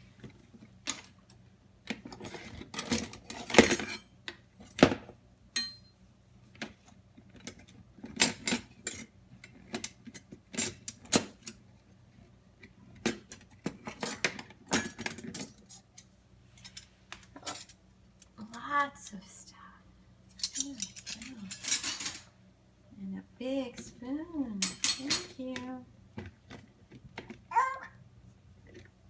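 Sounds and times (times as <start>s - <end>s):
cutlery clinking and clattering: 2.1s - 4.1s, 13.0s - 17.8s, 20.4s - 22.3s, 24.6s - 25.4s.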